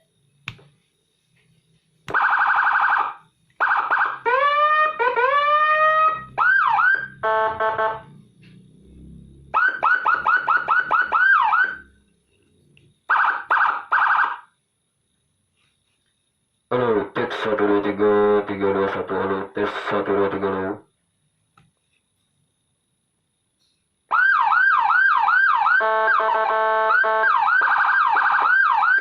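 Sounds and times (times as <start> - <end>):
electronic siren tones: 2.1 - 12.0, 24.1 - 29.0.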